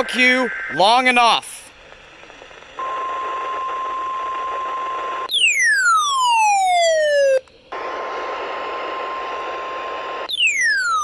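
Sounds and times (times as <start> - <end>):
radio static: 0.0 - 5.3, 7.2 - 10.3.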